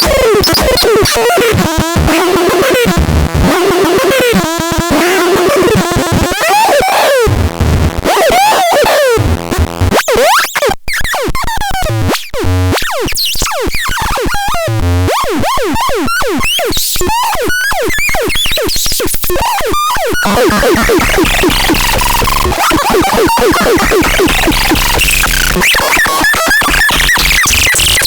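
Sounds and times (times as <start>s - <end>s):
stuttering electronic glitches: 0.0s - 11.0s, 16.8s - 28.0s.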